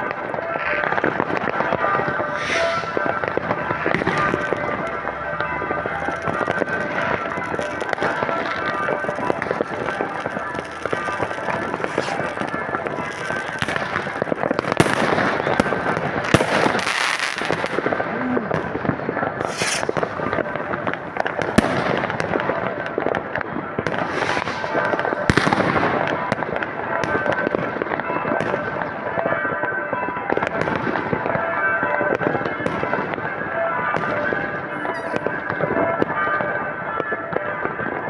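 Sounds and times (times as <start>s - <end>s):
firework bangs: 0.0s - 29.4s
fireworks crackling and popping: 0.0s - 38.0s.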